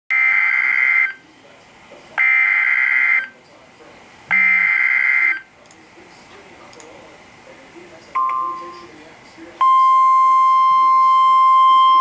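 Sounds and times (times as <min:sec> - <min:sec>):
data tone bursts: 0:04.3 - 0:05.4.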